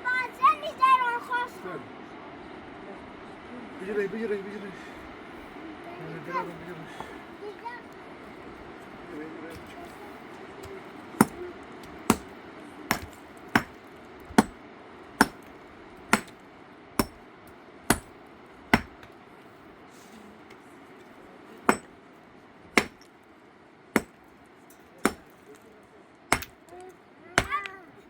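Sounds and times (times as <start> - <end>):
hammer blows: 17.0 - 17.2, 17.9 - 19.1.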